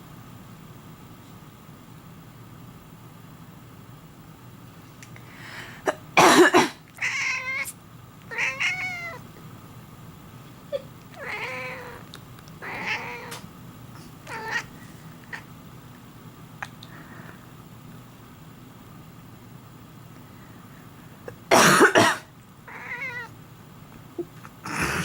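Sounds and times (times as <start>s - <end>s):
person coughing: 5.9s - 6.8s, 21.4s - 22.3s
cat meowing: 7.0s - 9.2s, 11.2s - 13.4s, 14.3s - 14.7s, 22.7s - 23.3s.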